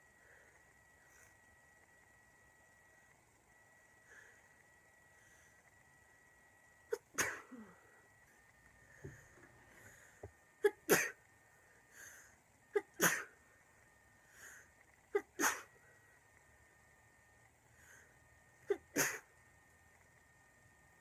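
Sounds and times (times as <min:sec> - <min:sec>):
faint breaths drawn in: 0:03.8 - 0:05.9, 0:11.4 - 0:12.6, 0:13.6 - 0:15.0, 0:17.6 - 0:18.4.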